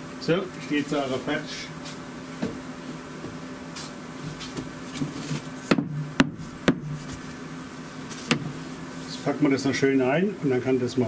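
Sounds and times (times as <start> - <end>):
steady low hum: 0.0 - 11.0
sharp knocks: 5.7 - 7.2, 8.3 - 8.6.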